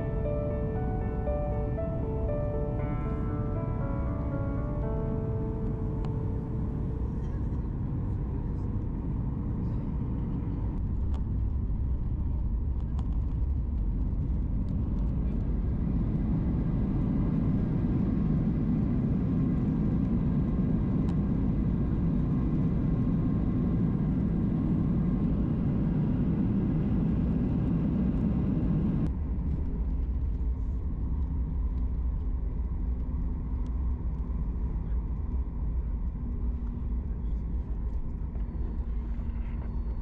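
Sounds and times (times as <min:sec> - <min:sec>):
airplane cabin rumble: 0:00.0 - 0:40.0.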